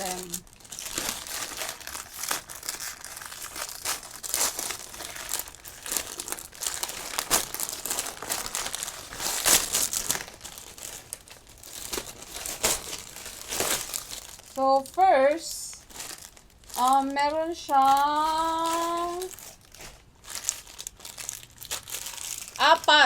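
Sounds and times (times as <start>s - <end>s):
packaging crinkling and rustling: 0.0s - 23.0s.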